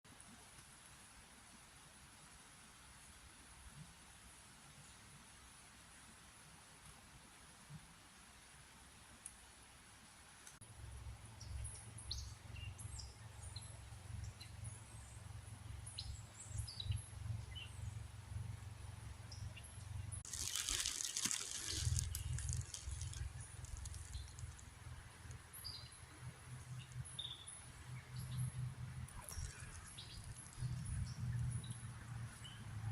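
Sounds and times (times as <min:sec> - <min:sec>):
small birds chirping: 0:11.3 - 0:18.2, 0:19.2 - 0:32.6
wind rumble on microphone: 0:21.8 - 0:32.9.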